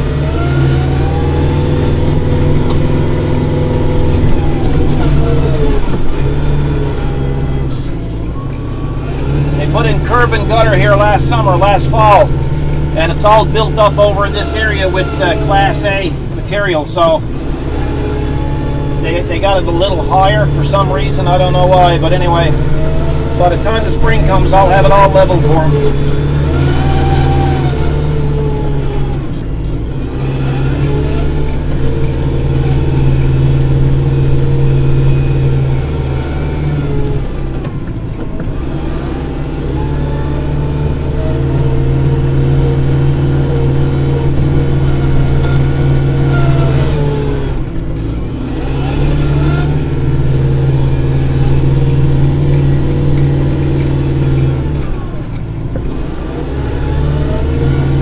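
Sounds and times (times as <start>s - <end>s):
tractor diesel engine running: 0.0s - 58.0s
snow blower: 8.4s - 37.6s.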